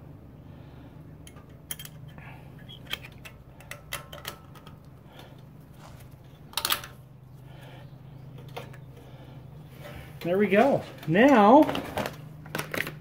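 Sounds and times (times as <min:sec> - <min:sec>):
metal clicks and scrapes: 0:01.2 - 0:07.0.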